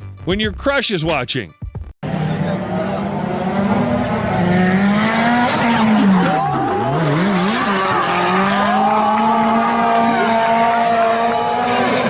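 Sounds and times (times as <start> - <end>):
car engine revving hard: 2.0 - 12.0.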